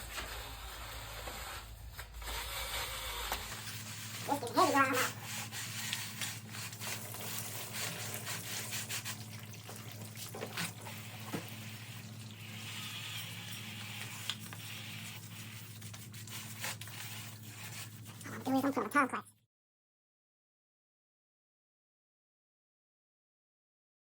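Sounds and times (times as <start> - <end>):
scrubbing and scraping strokes: 0.0 - 19.1
hissing liquid: 3.4 - 18.8.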